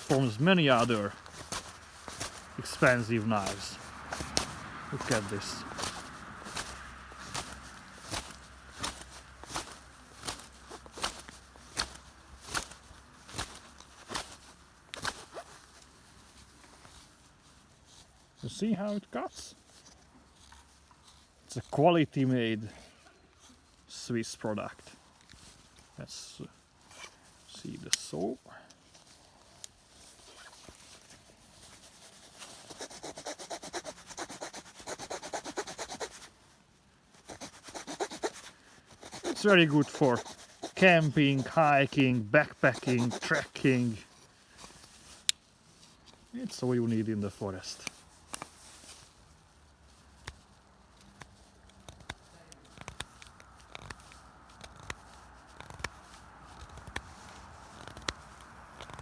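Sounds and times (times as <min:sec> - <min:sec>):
small saw blade sawing: 0:00.0 - 0:13.6, 0:32.1 - 0:36.3, 0:37.1 - 0:44.0
knife scraping wood: 0:00.0 - 0:14.4, 0:32.1 - 0:36.3, 0:37.1 - 0:45.4.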